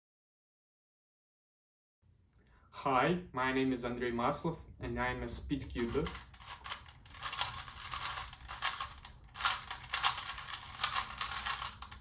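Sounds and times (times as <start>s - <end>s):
puzzle cube clicking: 5.8s - 12.0s.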